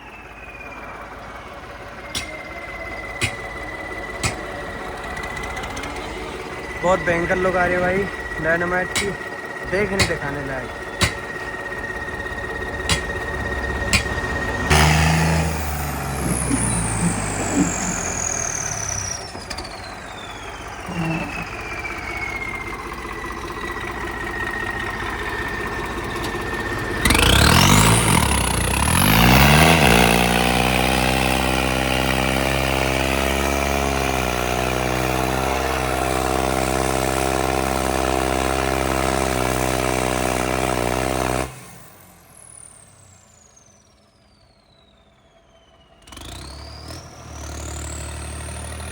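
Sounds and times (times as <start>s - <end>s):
high falling whistle: 0.0s - 25.8s
tractor engine running: 0.0s - 48.9s.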